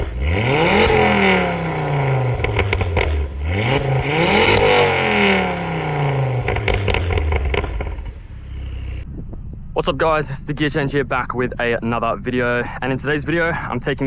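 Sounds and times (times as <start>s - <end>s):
car engine revving: 0.0s - 9.1s
exhaust pops and crackles: 0.0s - 12.5s.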